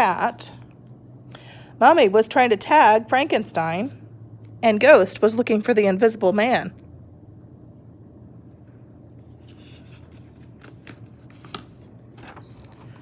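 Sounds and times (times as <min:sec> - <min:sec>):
low steady hum: 0:00.0 - 0:13.0
paper pages rustling: 0:09.2 - 0:13.0.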